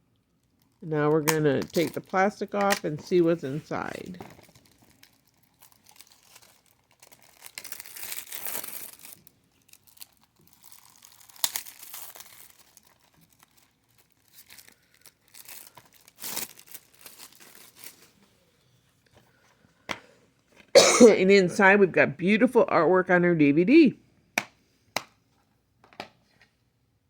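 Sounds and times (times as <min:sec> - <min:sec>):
plastic shrink-wrap tearing: 0:03.8 - 0:18.2.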